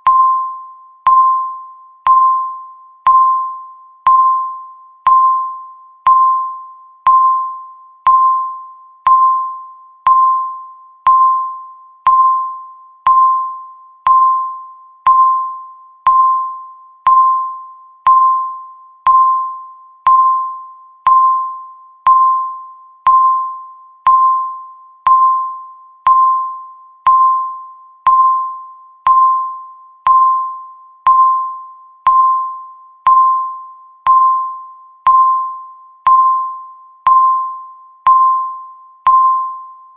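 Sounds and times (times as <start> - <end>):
electronic timer tick tone: 0.0 - 39.9.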